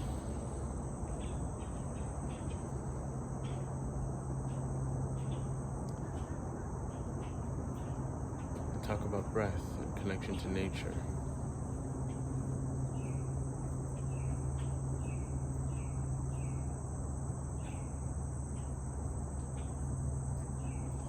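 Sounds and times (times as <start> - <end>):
crickets and insects chirring: 0.0 - 21.0
highway traffic hum: 0.0 - 21.0.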